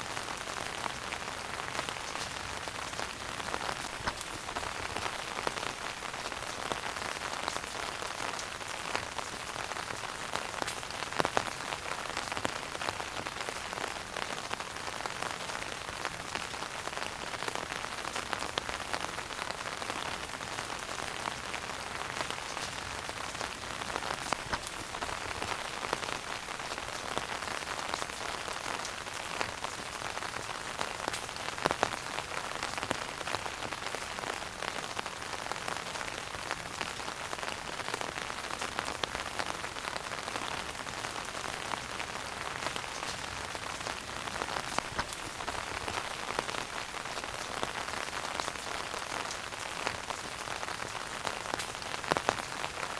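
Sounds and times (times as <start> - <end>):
wood fire crackling and popping: 1.7 - 9.4, 10.4 - 11.6, 22.2 - 29.9, 30.7 - 32.0, 41.8 - 52.8.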